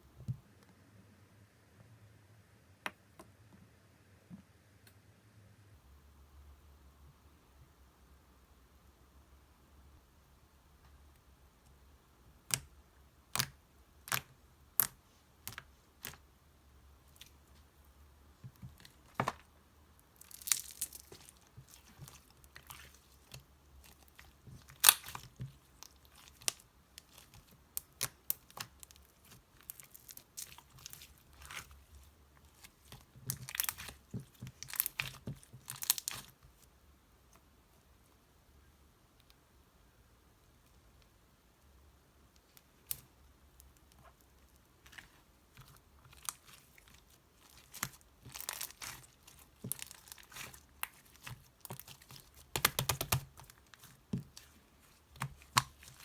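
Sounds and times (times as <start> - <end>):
slime crackly stretching: 20.1 - 36.6, 43.7 - 56.0.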